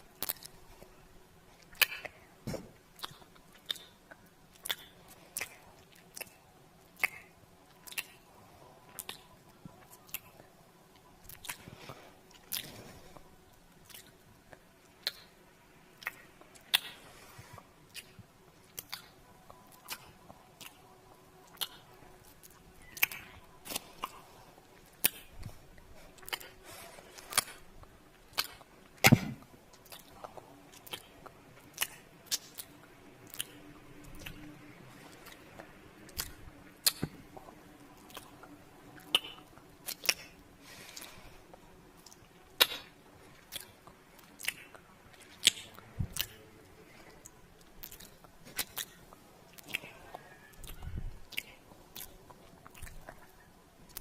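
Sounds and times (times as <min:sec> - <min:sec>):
kissing and lip smacking: 0:00.1 - 0:00.6, 0:01.6 - 0:02.2, 0:02.9 - 0:08.2, 0:08.9 - 0:09.3, 0:11.2 - 0:11.7, 0:13.8 - 0:15.4, 0:16.0 - 0:17.0, 0:17.9 - 0:24.2, 0:24.8 - 0:25.6, 0:26.2 - 0:27.6, 0:28.2 - 0:34.5, 0:35.1 - 0:37.2, 0:39.0 - 0:40.4, 0:42.0 - 0:46.4, 0:47.6 - 0:54.0.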